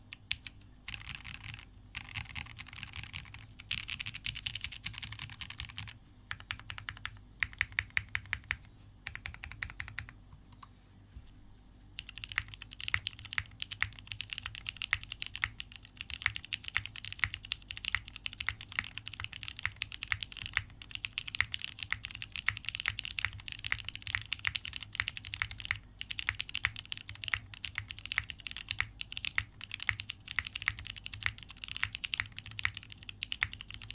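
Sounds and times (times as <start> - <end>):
mechanical keyboard typing: 0.1 - 10.6, 12.0 - 33.9.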